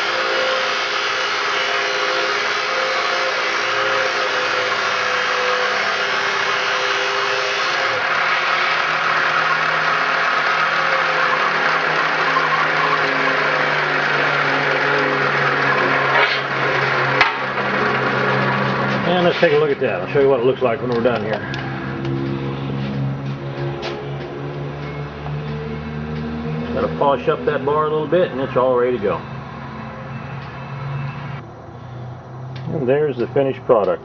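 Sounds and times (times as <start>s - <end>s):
grinder running: 0.0s - 31.0s.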